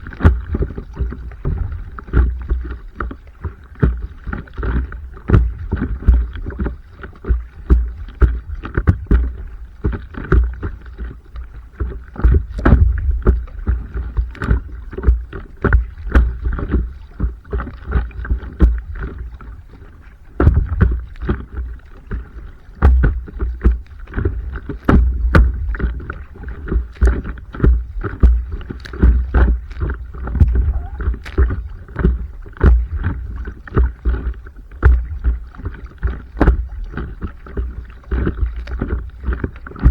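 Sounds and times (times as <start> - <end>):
water splashing against paddleboard: 0.0 - 39.9
low rumble: 29.2 - 33.6.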